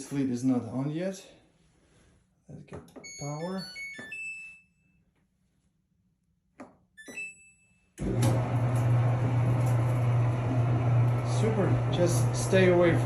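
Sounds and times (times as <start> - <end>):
dryer beeps: 3.0 - 4.6
dryer drum motor humming: 8.0 - 13.0.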